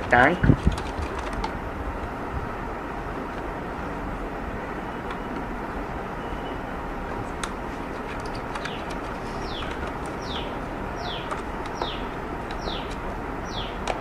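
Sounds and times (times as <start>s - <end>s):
small bird chirping: 8.6s - 13.8s.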